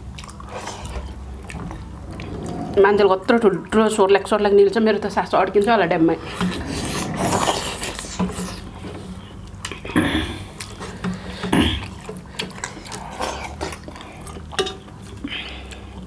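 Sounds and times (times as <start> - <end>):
person chewing and swallowing: 0.0 - 2.8, 6.3 - 16.0.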